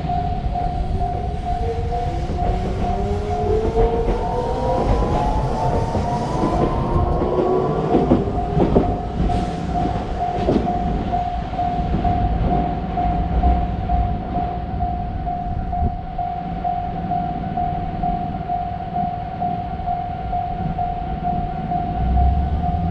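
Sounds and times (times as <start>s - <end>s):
electric train motor whine: 0.0s - 10.2s
train rumble: 0.0s - 22.9s
train wheel clacks: 0.1s - 15.0s.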